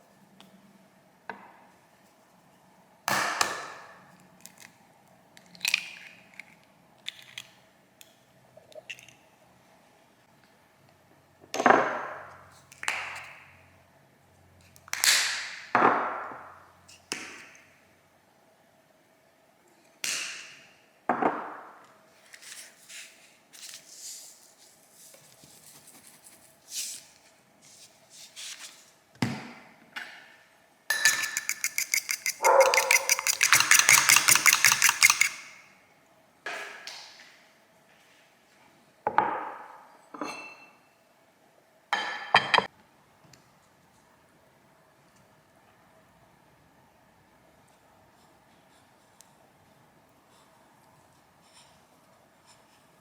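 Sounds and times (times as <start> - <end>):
hard objects knocking and clinking: 30.9 - 35.6
fast clicking: 31.0 - 35.5.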